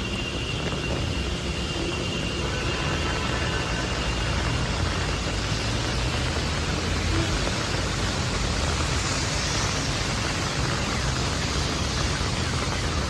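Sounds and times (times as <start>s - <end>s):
rain hissing: 0.0s - 13.0s.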